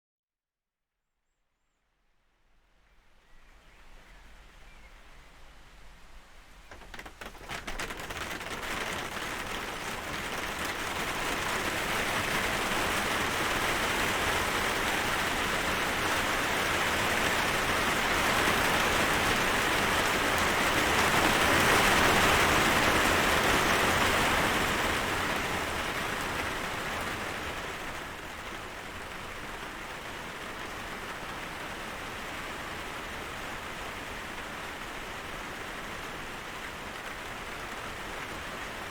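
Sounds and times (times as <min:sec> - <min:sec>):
steady rain falling: 0:03.3 - 0:38.9.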